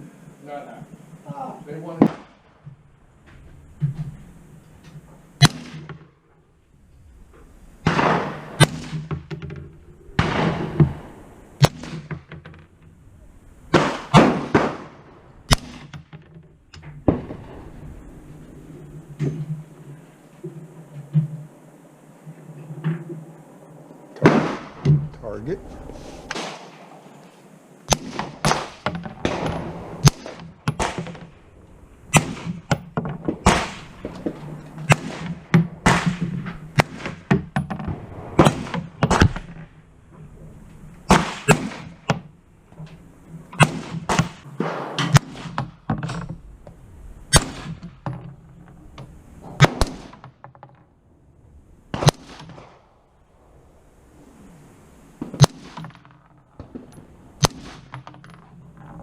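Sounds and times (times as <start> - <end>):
rifle shots: 5.4 - 6.1, 7.8 - 9.2, 10.2 - 12.3, 13.7 - 16.1, 24.2 - 25.1, 26.3 - 27.0, 27.9 - 31.3, 32.1 - 39.7, 41.1 - 42.2, 43.6 - 45.8, 47.3 - 48.0, 49.6 - 50.2, 51.9 - 52.8, 55.3 - 56.0, 57.4 - 58.0.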